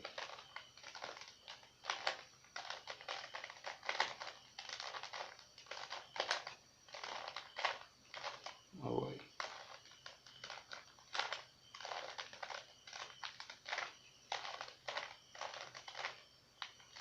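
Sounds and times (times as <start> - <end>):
plastic puzzle cube clicking: 0.0 - 8.6, 9.4 - 17.0.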